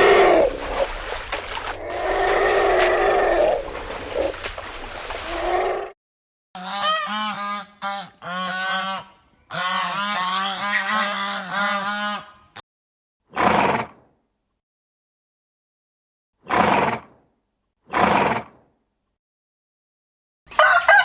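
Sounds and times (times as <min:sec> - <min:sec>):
waterfowl honking: 0:00.0 - 0:05.8.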